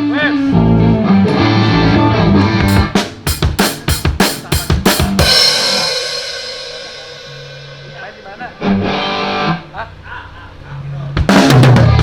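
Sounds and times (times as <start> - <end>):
electric guitar notes: 0.4 - 3.3, 5.1 - 9.8
drum fill: 1.3 - 8.6, 11.2 - 12.0
cymbal crash: 2.7 - 8.9.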